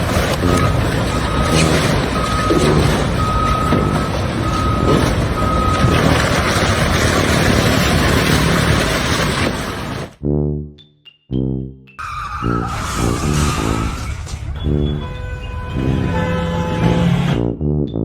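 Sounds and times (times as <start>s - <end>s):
reversing alarm beeping: 0.0s - 8.8s, 12.0s - 17.4s
heavy vehicle engine: 0.0s - 10.2s, 12.1s - 17.6s.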